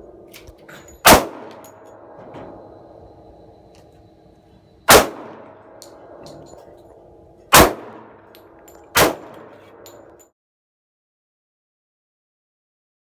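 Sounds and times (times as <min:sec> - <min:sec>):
pistol shots with ringing tail: 0:00.0 - 0:10.2.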